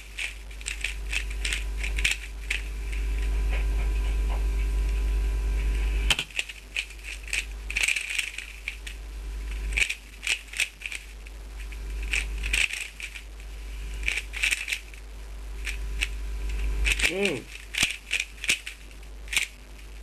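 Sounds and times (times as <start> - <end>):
puzzle cube clicking: 0.0 - 3.0, 6.1 - 9.0, 9.7 - 11.2, 12.0 - 13.3, 14.0 - 15.0, 16.8 - 19.6.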